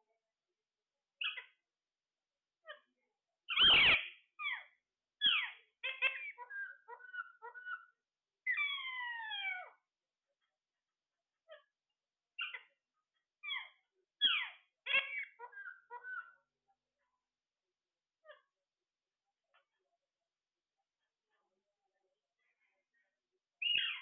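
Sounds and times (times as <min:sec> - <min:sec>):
parrot squawking and whistling: 0:03.5 - 0:04.6, 0:05.2 - 0:09.7, 0:23.6 - 0:24.0.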